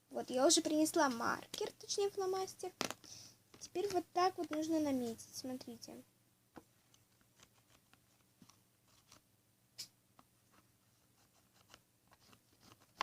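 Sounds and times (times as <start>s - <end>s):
pen scratching on plastic: 11.2s - 13.0s.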